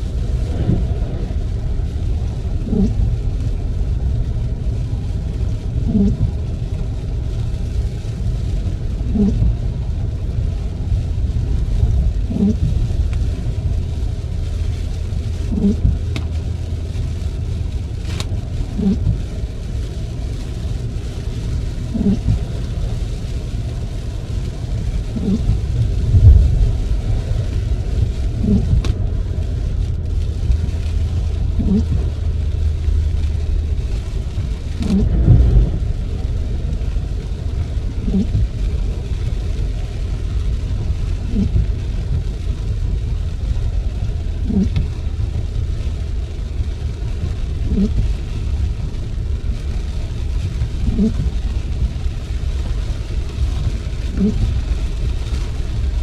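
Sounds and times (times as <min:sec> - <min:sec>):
car driving on wet road: 0:00.0 - 0:56.0
windscreen wipers squeaking: 0:00.0 - 0:56.0.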